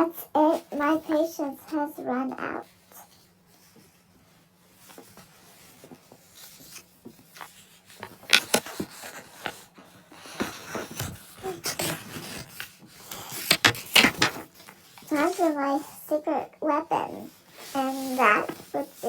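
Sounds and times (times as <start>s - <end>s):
objects being handled: 4.8s - 14.8s.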